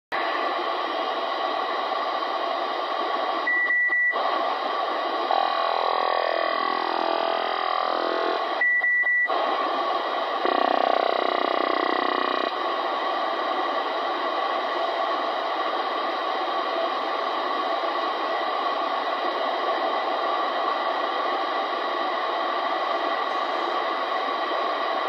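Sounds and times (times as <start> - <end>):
radio static hiss: 0.1 - 25.0
short steady beeps: 8.6 - 9.3.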